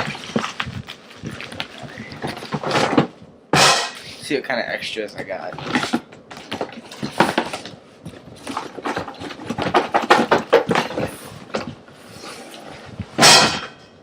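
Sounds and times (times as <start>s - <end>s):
packaging rustling: 0.0s - 3.2s.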